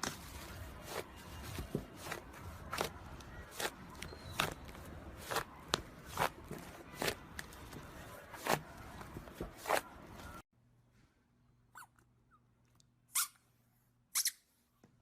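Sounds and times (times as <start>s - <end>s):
crisp crunching strokes: 0.0s - 10.4s.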